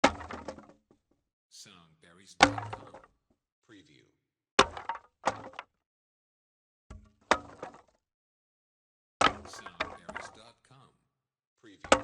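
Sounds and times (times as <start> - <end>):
wooden offcuts dropping and clattering: 0.0 - 1.2, 2.4 - 3.1, 4.6 - 5.7, 6.9 - 8.0, 9.2 - 10.5.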